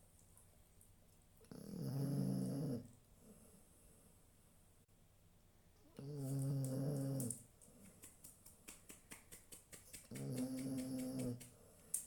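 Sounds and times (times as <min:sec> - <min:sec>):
dog snoring: 0:01.5 - 0:02.9, 0:06.0 - 0:07.4, 0:10.1 - 0:11.4.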